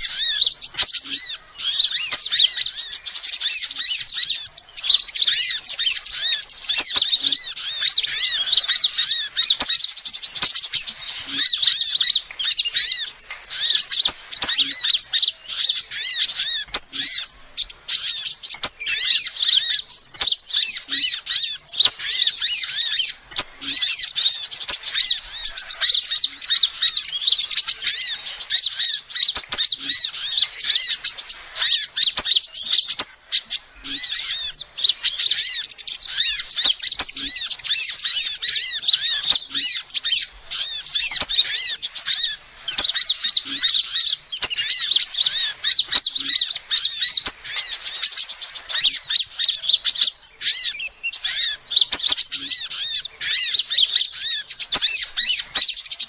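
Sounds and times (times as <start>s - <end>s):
bird chirping and trilling: 0.0s - 56.0s.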